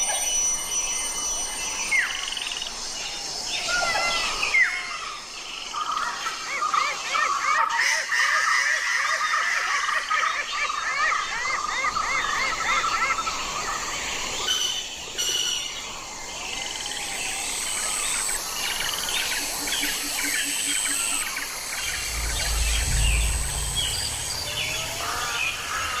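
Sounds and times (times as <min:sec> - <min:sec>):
high insect-like whine: 0:00.0 - 0:06.8, 0:13.2 - 0:26.0
low rumble: 0:21.6 - 0:26.0.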